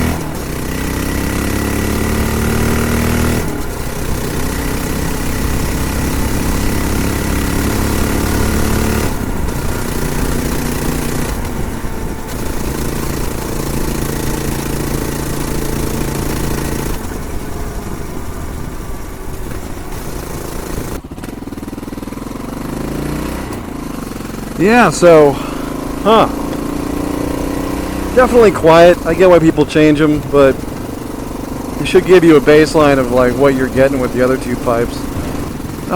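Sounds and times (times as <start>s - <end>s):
motorcycle engine running: 0.0s - 35.9s.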